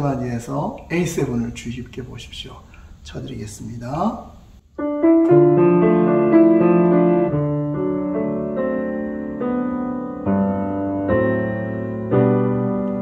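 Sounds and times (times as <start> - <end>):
piano chords: 4.7 - 13.0.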